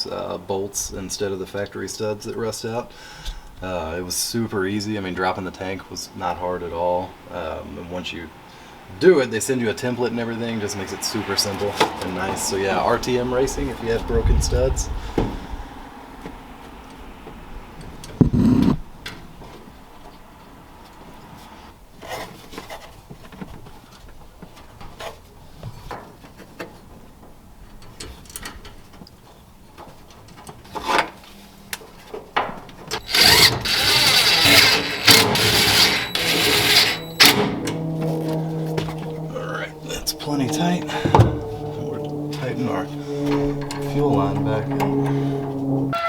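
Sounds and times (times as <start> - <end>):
power tool tightening bolts: 33.0 - 38.7.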